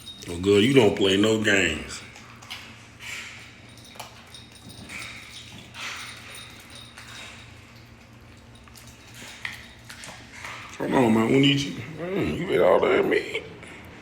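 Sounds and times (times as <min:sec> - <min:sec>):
dog chewing and eating: 0:00.0 - 0:14.0.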